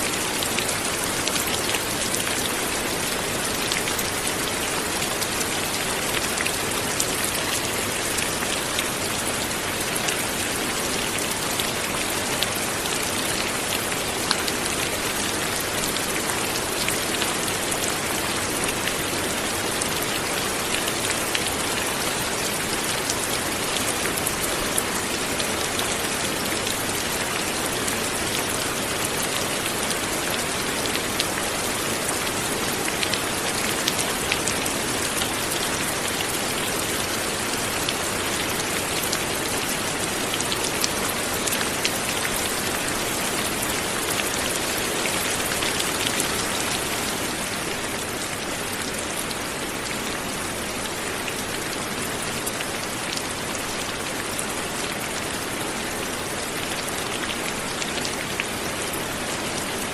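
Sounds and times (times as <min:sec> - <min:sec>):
light rain falling: 0:00.0 - 0:59.9.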